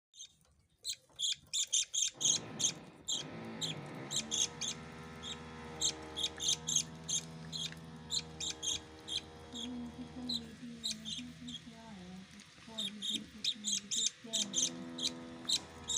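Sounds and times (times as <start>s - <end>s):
budgerigars chirping: 0.2s - 11.9s, 12.6s - 15.9s.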